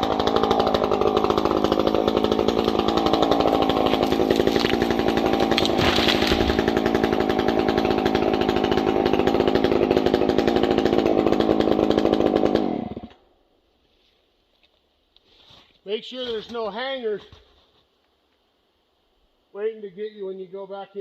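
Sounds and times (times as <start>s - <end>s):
chainsaw cutting wood: 0.0s - 13.2s.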